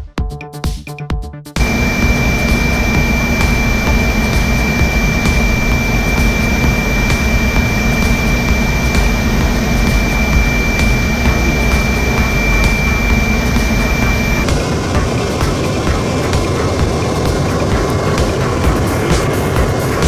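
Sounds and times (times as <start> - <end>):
music track: 0.0 - 20.0
aircraft cabin engine roar: 1.6 - 20.0
constant high whine: 1.6 - 20.0.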